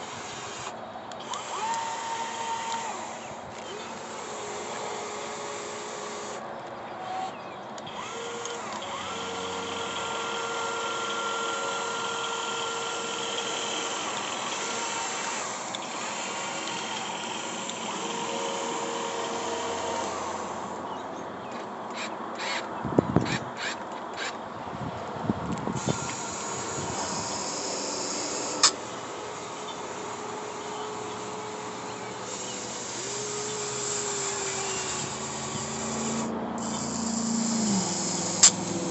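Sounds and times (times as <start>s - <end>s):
motors and hydraulic pump whining: 0.0s - 38.9s
mechanical hiss: 32.4s - 38.9s.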